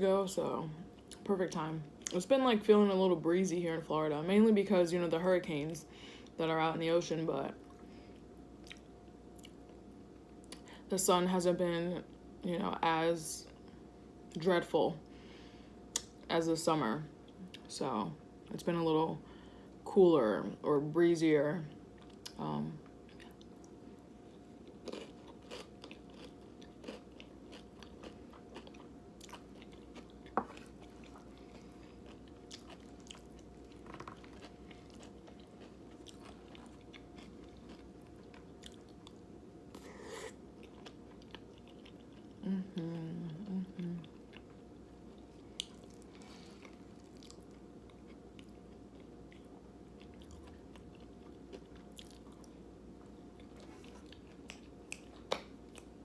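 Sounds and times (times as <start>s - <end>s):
chewing and biting food: 23.0s - 39.8s, 40.6s - 42.4s, 44.0s - 52.6s, 53.3s - 56.0s.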